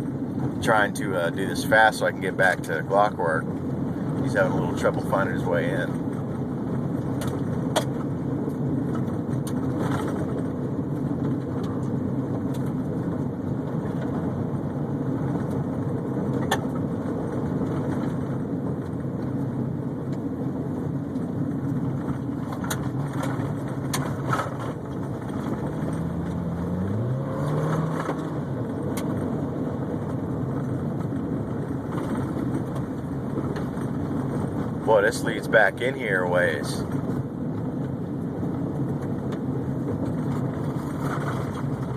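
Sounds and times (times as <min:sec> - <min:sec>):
car engine and road noise: 0:00.0 - 0:41.9
rising engine tone: 0:25.5 - 0:29.5.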